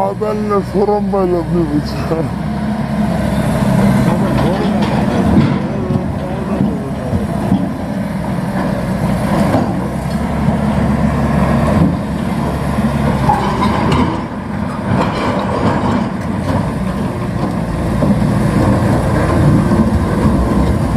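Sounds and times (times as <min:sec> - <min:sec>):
diesel engine running: 0:00.0 - 0:20.9
machinery clattering: 0:03.4 - 0:10.6, 0:11.7 - 0:20.9.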